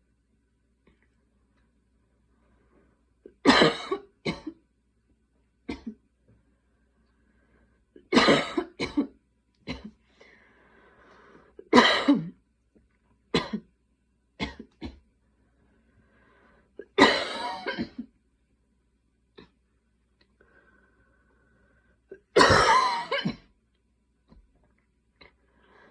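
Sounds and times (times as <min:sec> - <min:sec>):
woman coughing: 0:03.5 - 0:04.6, 0:08.1 - 0:09.1, 0:11.7 - 0:12.4, 0:16.9 - 0:18.1, 0:22.3 - 0:23.5
faint breathing: 0:07.0 - 0:07.9, 0:10.0 - 0:11.7, 0:15.5 - 0:16.8, 0:20.4 - 0:22.1, 0:25.2 - 0:25.9.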